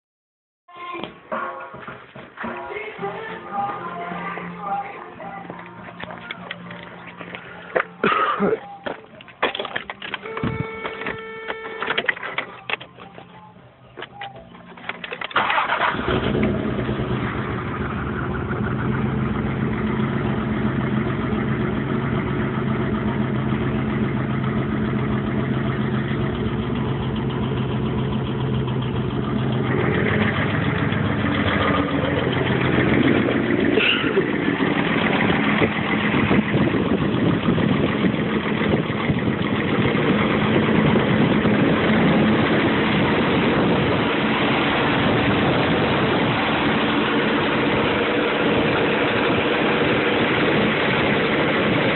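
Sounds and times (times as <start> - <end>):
car engine running: 14.6 - 51.9
engine ticking and knocking: 15.2 - 51.9.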